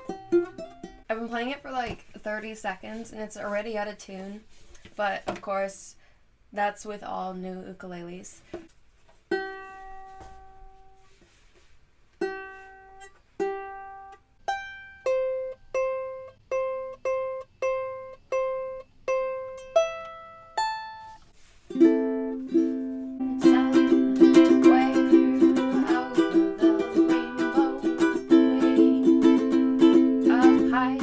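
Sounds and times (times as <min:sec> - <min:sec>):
ukulele picked notes and chords: 0:00.0 - 0:01.1, 0:09.3 - 0:11.4, 0:12.2 - 0:31.0.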